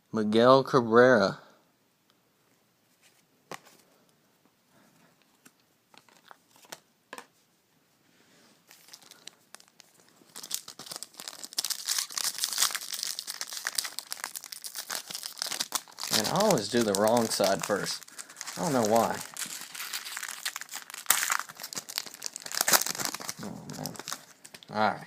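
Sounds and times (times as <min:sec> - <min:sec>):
plastic wrapper crinkling and tearing: 0:05.9 - 0:06.8, 0:08.7 - 0:24.7.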